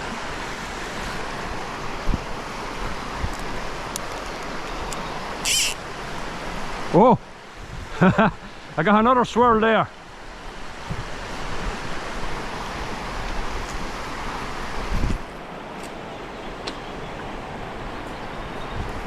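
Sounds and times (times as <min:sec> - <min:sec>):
river water rushing: 0:00.0 - 0:19.0
wind on microphone: 0:07.6 - 0:08.0, 0:10.8 - 0:14.0, 0:14.6 - 0:15.3, 0:18.2 - 0:19.0.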